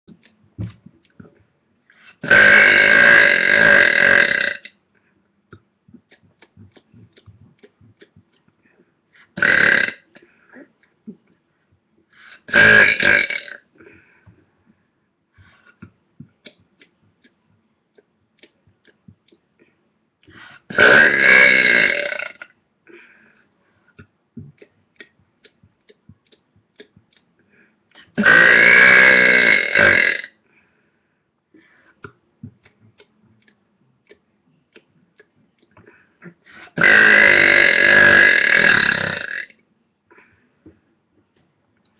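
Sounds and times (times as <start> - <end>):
person burping loudly: 2.2 - 4.8, 9.4 - 10.2, 12.5 - 13.7, 20.7 - 22.6, 28.2 - 30.4, 36.2 - 39.6.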